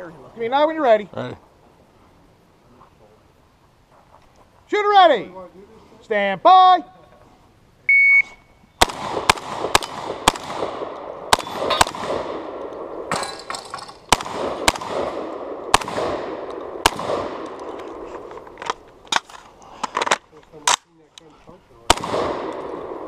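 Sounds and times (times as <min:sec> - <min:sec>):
shotgun shots echoing: 0:08.8 - 0:19.4, 0:21.8 - 0:23.0.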